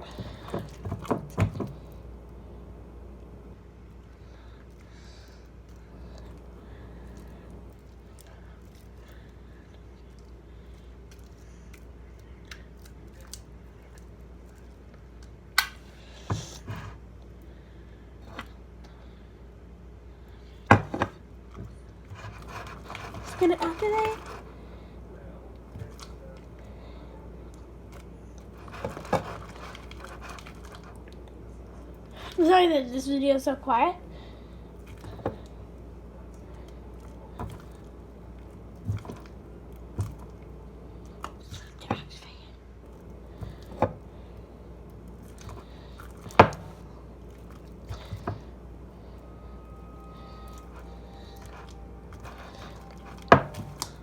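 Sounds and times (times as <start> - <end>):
low steady hum: 0.0 - 54.0
slime squelching: 21.2 - 32.6, 42.8 - 54.0.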